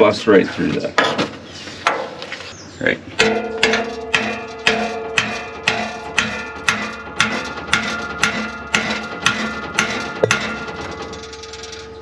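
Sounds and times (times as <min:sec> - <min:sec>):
hammer blows on ringing metal: 0:03.2 - 0:12.0.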